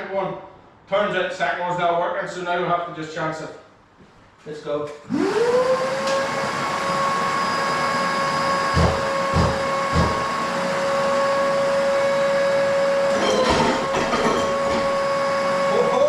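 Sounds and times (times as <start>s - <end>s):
floor grinder high whine: 5.1s - 16.0s.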